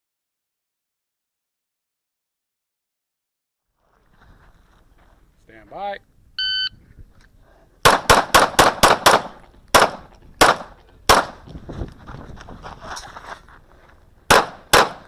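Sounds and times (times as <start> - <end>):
pistol shots: 7.8 - 11.4, 14.3 - 15.0.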